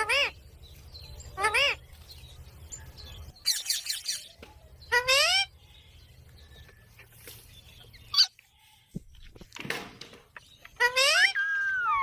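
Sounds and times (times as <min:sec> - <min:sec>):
parrot calling: 0:04.9 - 0:05.5, 0:10.7 - 0:12.0
parrot squawk: 0:10.8 - 0:12.0.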